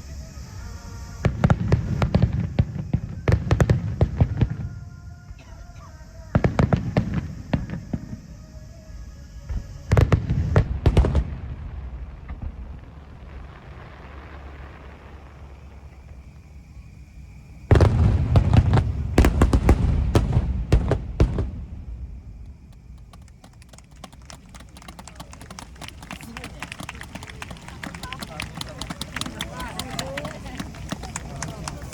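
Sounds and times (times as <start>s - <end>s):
fireworks crackling: 6.1s - 31.9s
fireworks booming: 9.5s - 31.9s.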